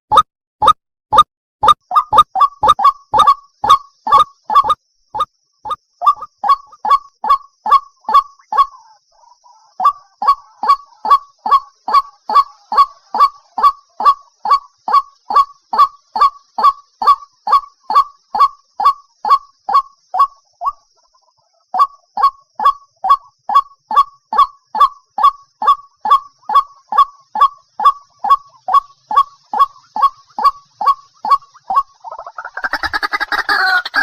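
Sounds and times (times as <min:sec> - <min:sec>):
waterhen harsh calls: 0:25.6 - 0:34.0.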